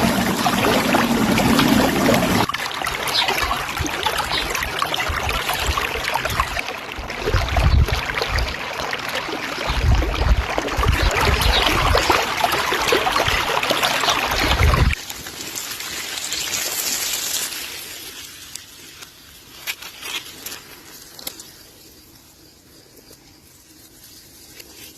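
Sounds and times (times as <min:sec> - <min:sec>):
running water: 0:00.0 - 0:20.0
wind buffeting microphone: 0:03.4 - 0:08.6, 0:09.5 - 0:13.6, 0:14.3 - 0:15.0
outdoor hiss: 0:15.0 - 0:22.7.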